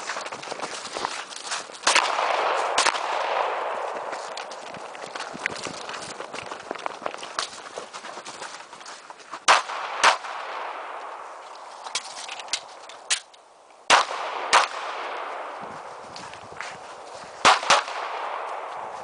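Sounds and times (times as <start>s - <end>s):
gunshots with echo: 1.8s - 4.4s, 9.5s - 11.2s, 13.9s - 15.6s, 17.4s - 18.9s.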